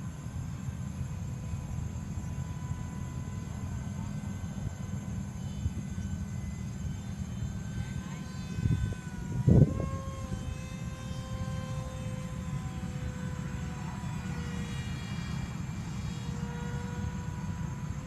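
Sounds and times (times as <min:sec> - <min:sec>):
model plane motor whining: 0:00.0 - 0:18.0
wind on microphone: 0:07.8 - 0:11.5.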